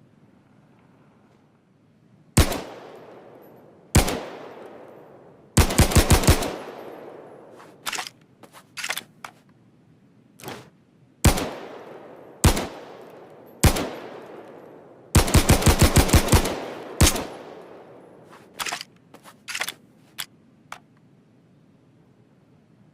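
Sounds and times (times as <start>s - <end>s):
pistol gunshots echoing: 2.4s - 8.1s, 11.2s - 18.8s
sharp metallic clicks: 5.6s - 9.4s, 11.4s - 21.0s.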